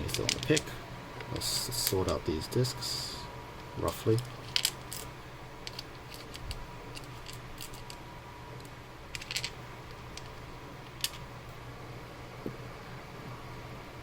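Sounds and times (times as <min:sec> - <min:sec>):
metal discs clicking together: 0:00.0 - 0:02.7
steady low hum: 0:00.0 - 0:14.0.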